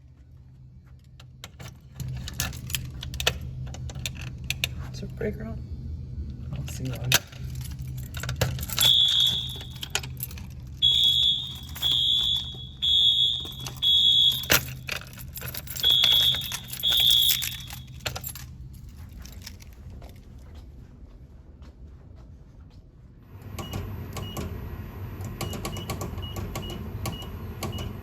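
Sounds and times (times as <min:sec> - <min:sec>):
keys jangling and clicking: 0:01.0 - 0:05.0, 0:06.5 - 0:20.7
fire alarm horn pulses: 0:08.7 - 0:10.2, 0:10.8 - 0:14.9, 0:15.6 - 0:18.2, 0:25.4 - 0:28.0.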